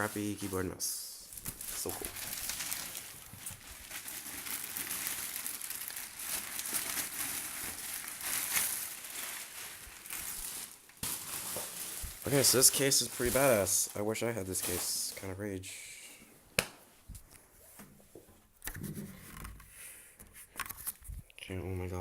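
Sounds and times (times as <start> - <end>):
packaging crinkling and rustling: 1.3 - 15.2.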